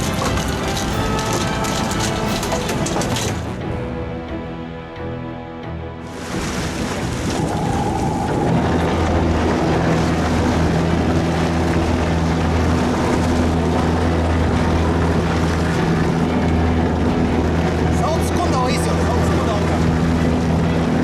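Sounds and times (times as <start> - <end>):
water rushing: 0.0 - 4.0, 6.0 - 21.0
boat engine humming: 0.0 - 21.0
wind rushing: 6.1 - 11.2.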